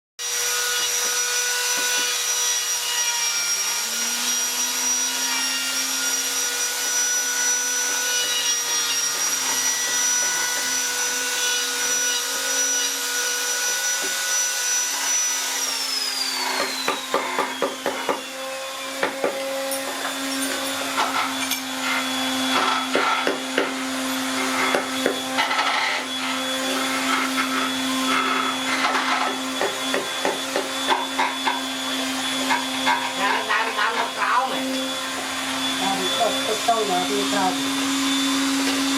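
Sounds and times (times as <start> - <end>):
power tool motors whining: 0.2 - 38.9
knocks and clicks of tools on wood: 1.7 - 2.2, 15.6 - 18.3, 18.9 - 23.8, 24.4 - 25.8, 28.8 - 33.2.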